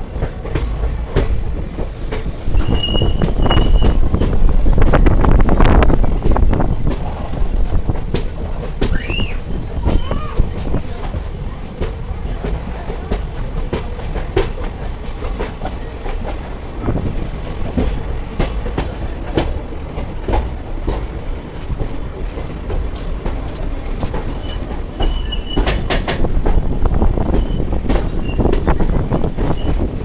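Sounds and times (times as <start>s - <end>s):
train rumbling on track: 0.0s - 30.0s
wheels clacking over rail joints: 0.0s - 30.0s
wheels squealing: 1.8s - 11.1s, 23.4s - 30.0s.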